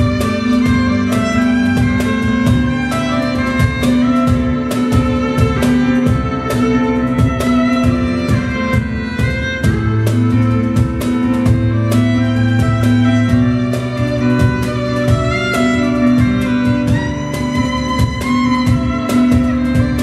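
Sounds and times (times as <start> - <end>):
bass line: 0.0 - 20.0
drum beat: 0.0 - 20.0
electric violin melody: 0.0 - 20.0.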